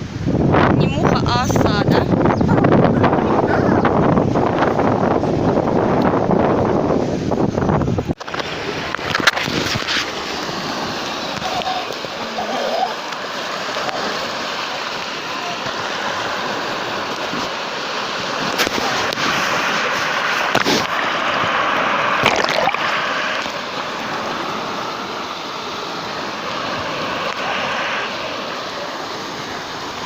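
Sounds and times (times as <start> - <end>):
waves washing ashore: 0.0 - 30.0
water splashes: 8.1 - 30.0.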